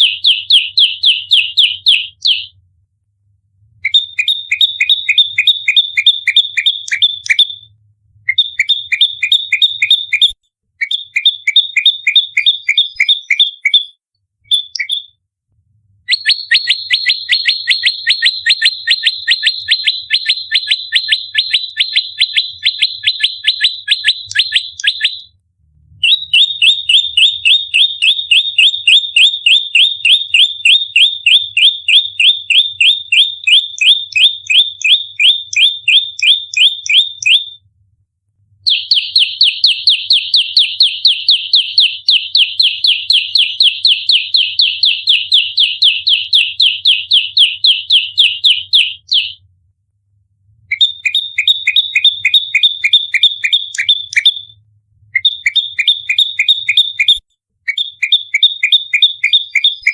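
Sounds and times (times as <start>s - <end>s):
bird singing sharp high chirps: 0.0s - 2.5s, 3.8s - 7.7s, 8.3s - 15.2s, 16.1s - 25.3s, 26.0s - 37.6s, 38.7s - 49.4s, 50.7s - 54.5s, 55.2s - 59.9s.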